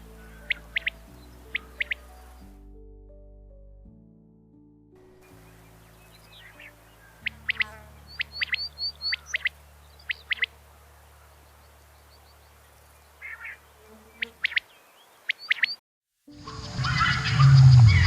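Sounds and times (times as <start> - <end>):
bird chirping: 0.0 - 2.6, 5.1 - 15.8.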